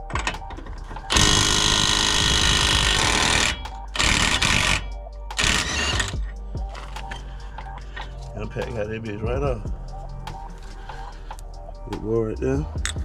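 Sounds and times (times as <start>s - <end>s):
impact wrench hammering: 1.1s - 6.2s.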